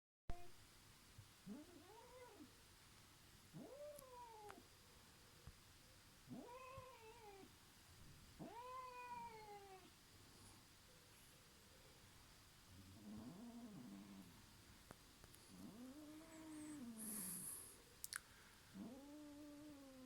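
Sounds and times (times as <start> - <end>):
pet moaning in its sleep: 3.5 - 4.6, 12.8 - 14.4, 15.5 - 17.7, 18.7 - 20.0.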